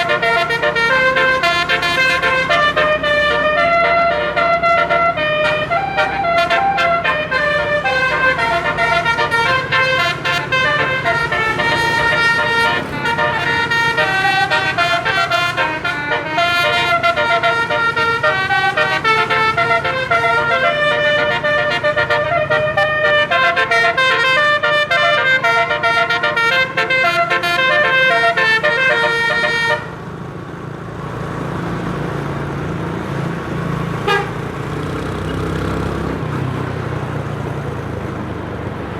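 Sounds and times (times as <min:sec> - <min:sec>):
tuned bus horns playing melody: 0:00.0 - 0:30.2, 0:33.9 - 0:36.2
engine and road rumble: 0:00.0 - 0:38.9
short horn toot: 0:34.0 - 0:34.4.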